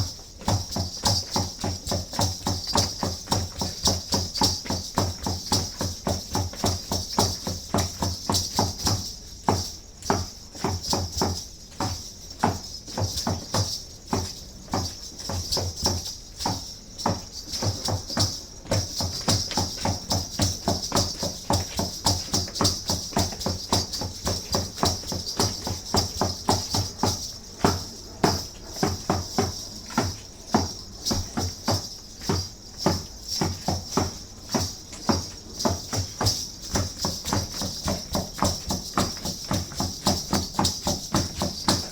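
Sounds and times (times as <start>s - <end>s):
rattles shaking: 0.0s - 41.9s.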